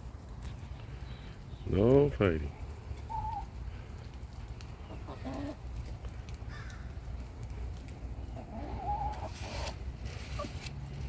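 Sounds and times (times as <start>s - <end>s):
hens clucking: 2.9s - 3.7s, 4.6s - 5.9s, 8.1s - 10.7s.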